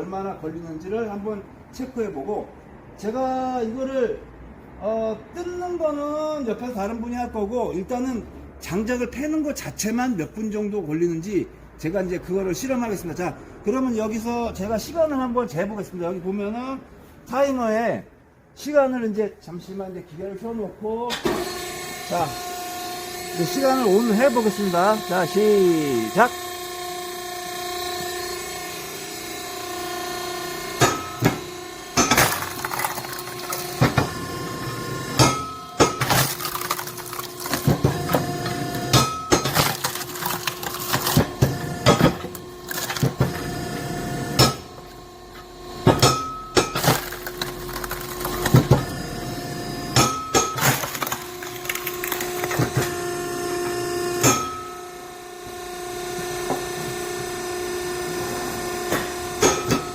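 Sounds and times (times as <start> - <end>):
hydraulic pump humming: 21.2 - 59.9
wood cracking and snapping: 32.1 - 33.9, 35.8 - 37.9, 38.9 - 41.4, 42.0 - 43.2, 46.7 - 48.8, 50.6 - 52.8.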